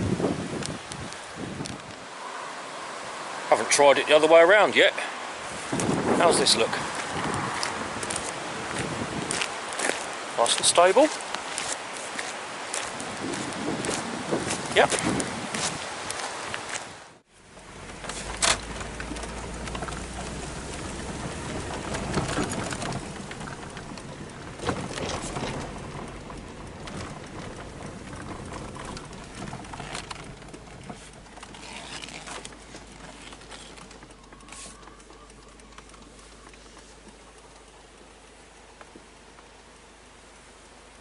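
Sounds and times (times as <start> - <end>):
wind buffeting microphone: 0.0 - 2.2, 5.2 - 38.4
handling rustling and knocks: 17.8 - 39.5.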